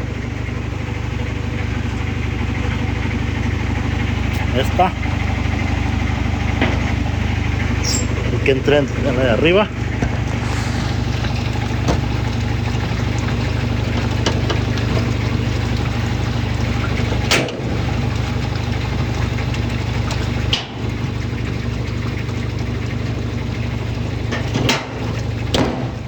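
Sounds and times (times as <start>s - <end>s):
washing machine motor hum: 0.0s - 26.0s
water sloshing: 9.7s - 24.1s.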